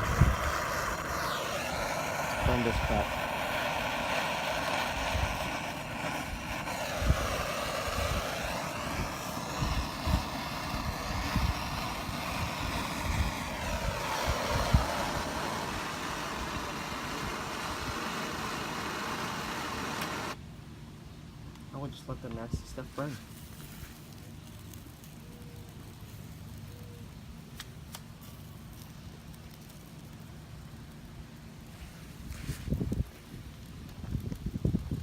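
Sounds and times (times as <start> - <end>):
wind buffeting microphone: 0.0 - 18.3, 32.4 - 35.0
torch flame hissing: 0.0 - 20.4, 22.6 - 26.8, 27.4 - 35.0.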